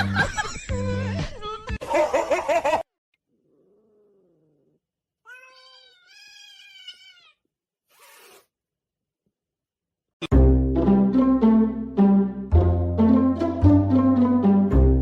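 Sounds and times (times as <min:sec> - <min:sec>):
cat meowing: 0:03.4 - 0:08.4.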